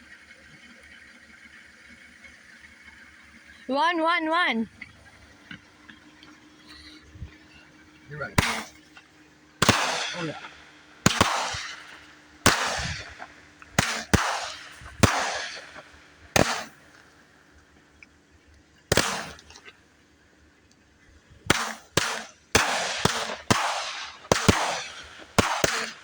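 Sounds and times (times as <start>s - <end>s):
fireworks bangs with echo: 8.3s - 16.9s, 18.9s - 19.6s, 21.4s - 26.0s.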